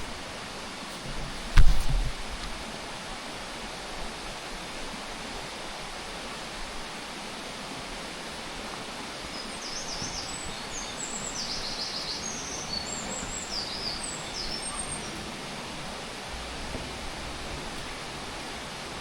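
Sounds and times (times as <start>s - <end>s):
steady rushing hiss: 0.0s - 19.0s
songbird singing trills: 9.3s - 15.3s.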